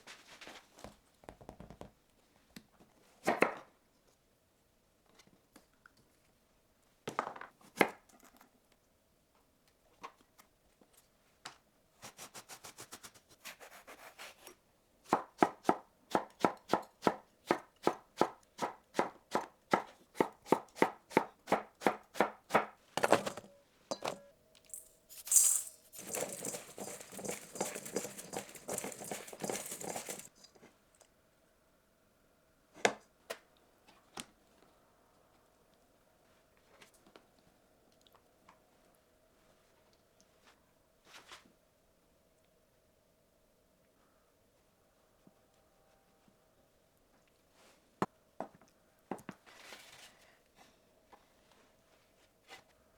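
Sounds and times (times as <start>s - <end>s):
hissing rustle: 24.7s - 30.3s.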